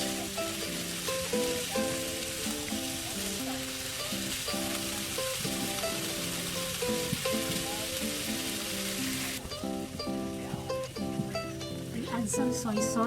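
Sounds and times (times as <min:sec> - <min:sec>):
background music: 0:00.0 - 0:13.0
vegetables sizzling in a skillet: 0:00.0 - 0:13.0.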